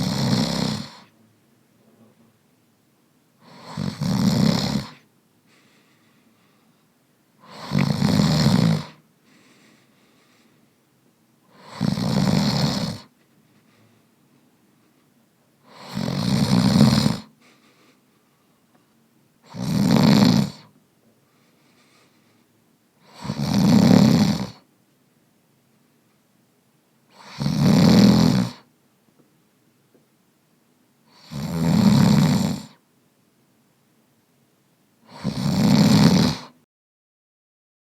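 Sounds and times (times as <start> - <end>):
person snoring: 0.0 - 1.1, 3.4 - 5.0, 7.4 - 9.0, 11.5 - 13.1, 15.6 - 17.3, 19.4 - 20.7, 23.0 - 24.6, 27.1 - 28.7, 31.1 - 32.8, 35.0 - 36.6.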